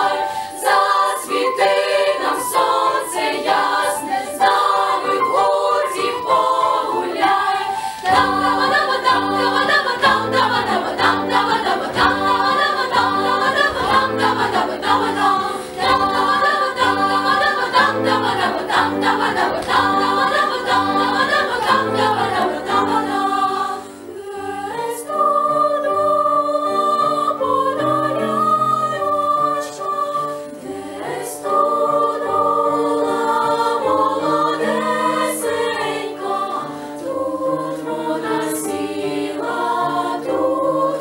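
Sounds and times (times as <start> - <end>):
children's choir singing: 0.0 - 41.0
piano accompaniment: 0.0 - 41.0.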